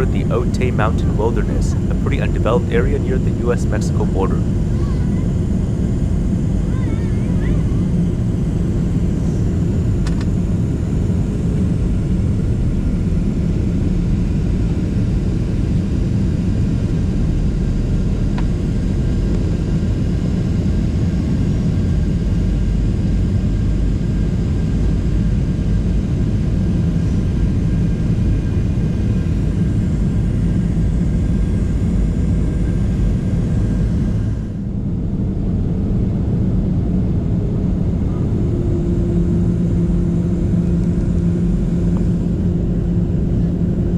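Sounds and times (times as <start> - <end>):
airliner cabin engine rumble: 0.0 - 43.9.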